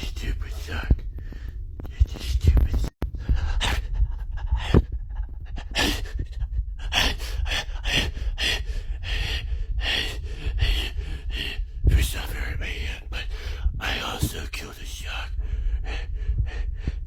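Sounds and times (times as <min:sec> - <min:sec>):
man panting heavily: 0:03.1 - 0:13.8, 0:15.2 - 0:17.0.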